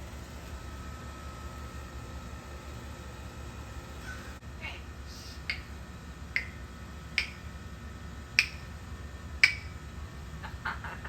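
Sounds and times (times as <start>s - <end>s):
parrot clicking: 5.5s - 5.7s, 6.3s - 7.5s, 8.4s - 8.7s, 9.4s - 9.8s.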